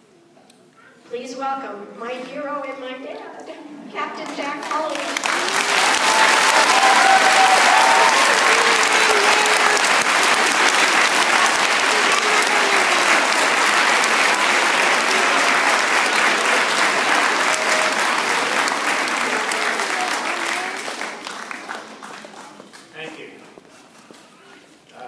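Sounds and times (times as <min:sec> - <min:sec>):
children applauding: 0:04.5 - 0:22.9.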